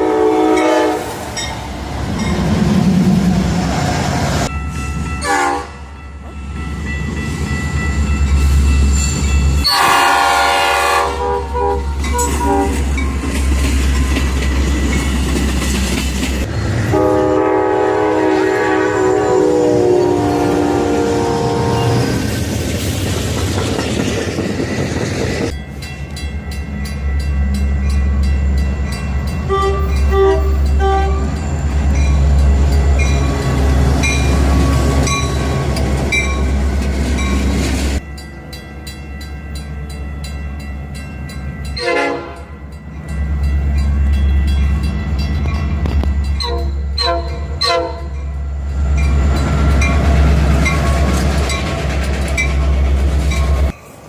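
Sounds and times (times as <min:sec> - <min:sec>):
locomotive air horn blasts: 0:00.0 - 0:01.1, 0:05.2 - 0:05.8, 0:09.6 - 0:12.8, 0:16.9 - 0:22.2, 0:29.5 - 0:31.3, 0:41.8 - 0:42.6, 0:46.4 - 0:48.2
passing trains rumbling: 0:00.0 - 0:54.0.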